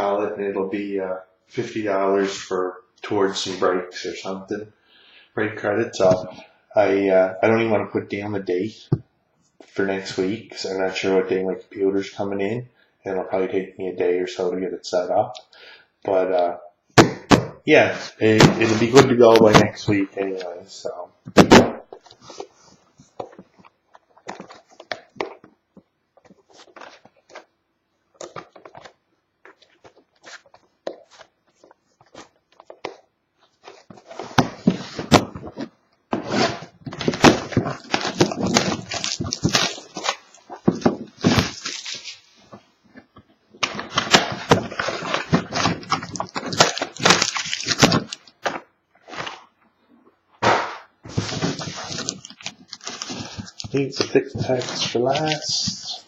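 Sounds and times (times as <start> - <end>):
wrappers crinkling and tearing: 36.3 - 40.6, 41.2 - 42.3, 43.8 - 48.3, 51.1 - 56.0.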